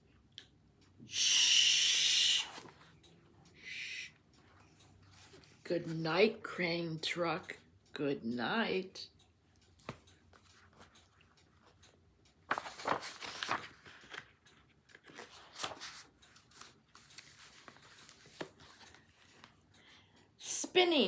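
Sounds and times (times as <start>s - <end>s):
faint paper rustling: 12.5s - 19.6s.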